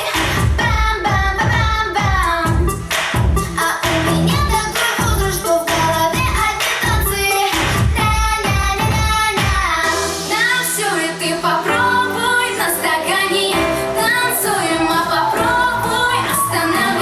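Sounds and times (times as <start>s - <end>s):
steady bass line: 0.2s - 9.6s, 13.6s - 17.0s
high sung vocal melody: 9.8s - 17.0s.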